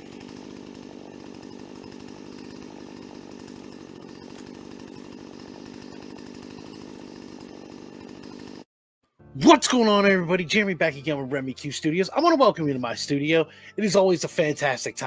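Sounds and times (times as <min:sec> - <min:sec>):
chainsaw engine buzzing: 0:00.0 - 0:08.7.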